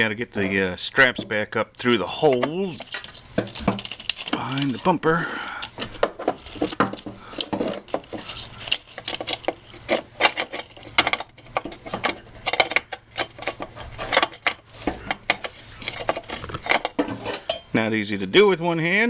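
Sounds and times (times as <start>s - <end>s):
straps clicking and scraping: 0.5s - 17.7s.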